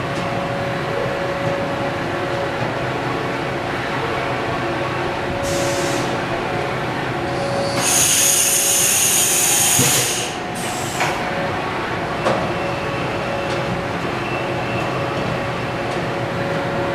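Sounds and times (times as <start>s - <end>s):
loud hiss with high whine: 7.6s - 11.1s.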